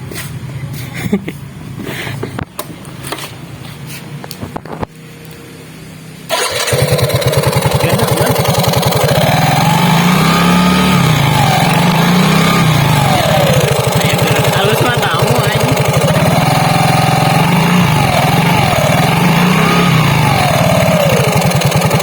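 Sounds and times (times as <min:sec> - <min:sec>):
scooter engine revving: 0:06.3 - 0:22.0
whistling whine with revs: 0:09.0 - 0:14.0, 0:16.0 - 0:21.3.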